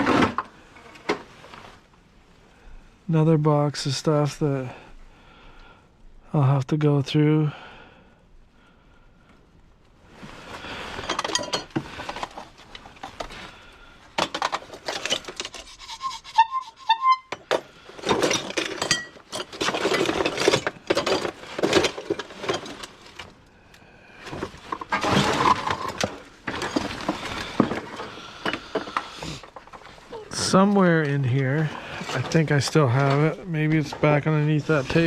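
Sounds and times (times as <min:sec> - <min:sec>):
scrap items clattering and clinking: 0:00.0 - 0:01.8, 0:10.2 - 0:16.0, 0:17.3 - 0:23.4, 0:24.2 - 0:35.0.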